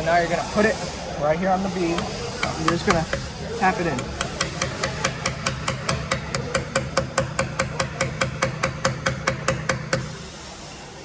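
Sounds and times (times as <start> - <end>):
hammer tapping metal weight: 1.9 - 3.3, 3.9 - 10.2.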